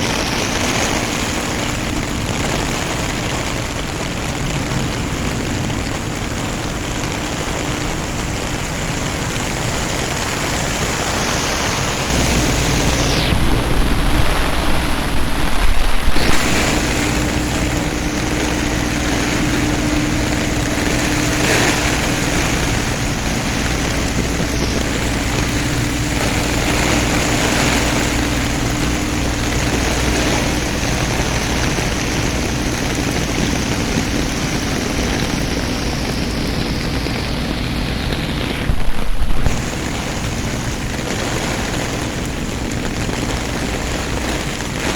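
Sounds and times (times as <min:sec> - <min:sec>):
heavy rain falling: 0:00.0 - 0:44.9
low hum: 0:10.9 - 0:43.1
deep rumble: 0:11.8 - 0:43.8.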